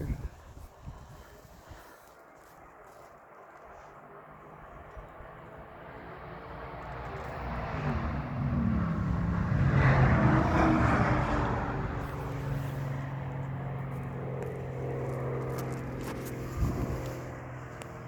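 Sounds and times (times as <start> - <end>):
motor vehicle passing by: 4.0 - 18.0.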